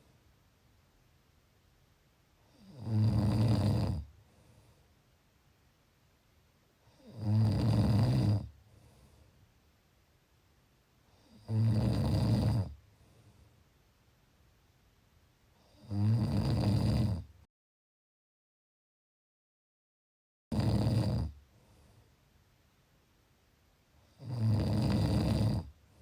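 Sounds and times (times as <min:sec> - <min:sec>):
low rattling snores: 0:02.5 - 0:04.1, 0:06.9 - 0:08.5, 0:11.2 - 0:12.8, 0:15.6 - 0:17.3, 0:20.5 - 0:21.4, 0:24.1 - 0:25.8.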